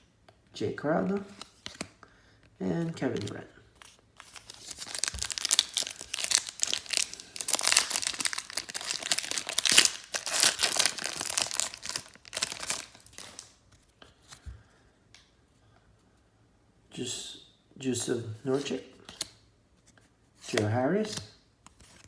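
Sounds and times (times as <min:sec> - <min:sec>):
plastic wrapper crinkling and tearing: 0:03.9 - 0:13.6.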